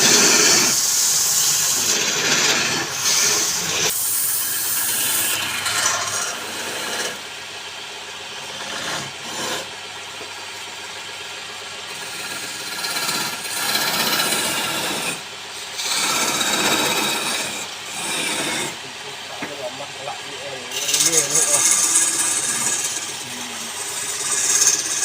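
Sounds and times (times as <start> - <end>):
tool rasping on spinning wood: 0.0 - 7.4, 8.2 - 9.9, 11.8 - 25.0
wood lathe running: 0.0 - 10.6, 11.2 - 25.0.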